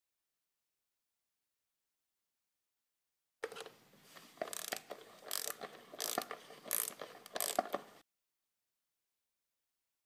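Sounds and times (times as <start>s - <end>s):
ratchet wrench clicking: 4.4s - 7.8s.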